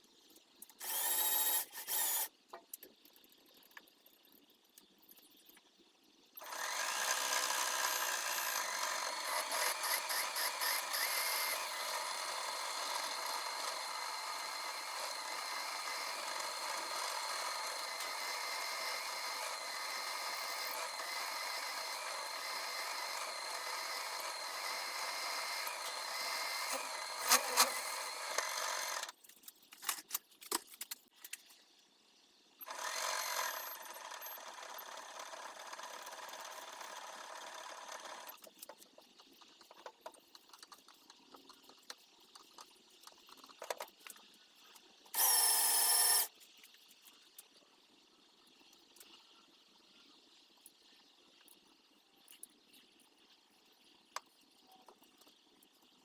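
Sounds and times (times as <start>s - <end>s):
small electric machine tool running: 0.8s - 2.3s, 6.4s - 29.1s, 32.6s - 38.4s, 45.2s - 46.3s.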